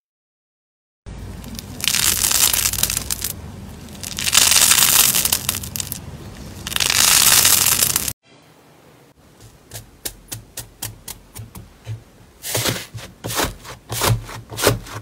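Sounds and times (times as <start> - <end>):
slime squeezed crackling and popping: 1.5 - 6.0, 6.6 - 8.2.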